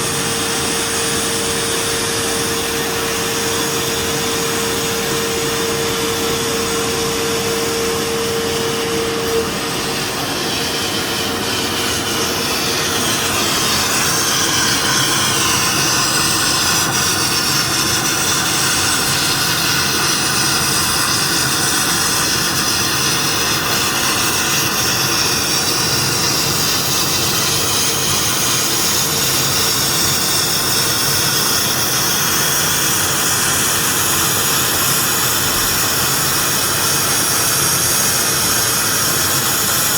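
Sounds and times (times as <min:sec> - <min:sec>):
steady hum-like tone: 0:00.0 - 0:18.3
sandblasting air rush: 0:00.0 - 0:39.9.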